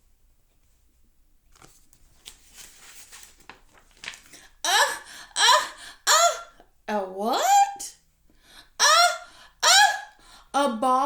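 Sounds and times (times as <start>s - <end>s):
paper page rustling and turning: 1.4s - 4.6s.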